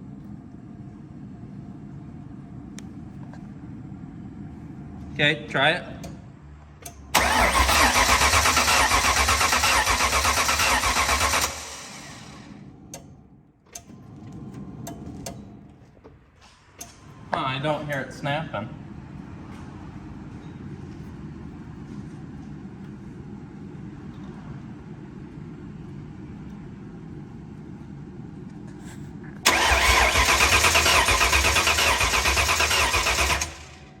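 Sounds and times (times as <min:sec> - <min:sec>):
starter motor cranking engine: 0:07.1 - 0:12.6, 0:29.4 - 0:34.0.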